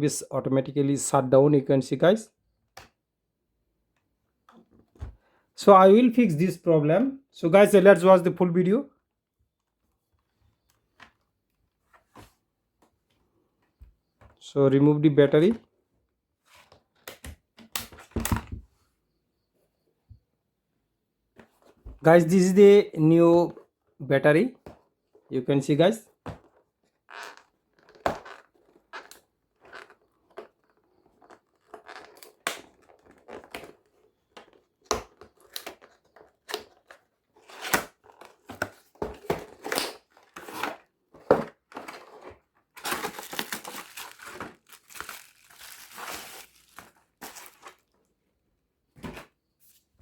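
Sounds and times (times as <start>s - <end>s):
packaging rustling: 27.2s - 48.0s.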